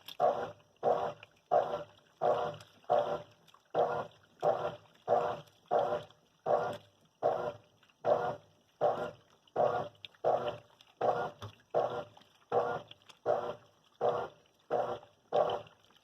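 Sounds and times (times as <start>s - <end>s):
washing machine agitating: 0.0s - 16.0s.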